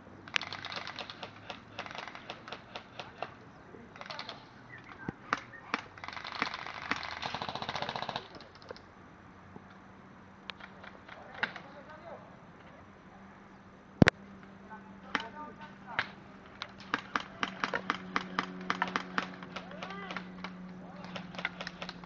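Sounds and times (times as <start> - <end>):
airsoft guns firing: 0.3 - 3.4, 4.0 - 8.5, 16.0 - 22.0.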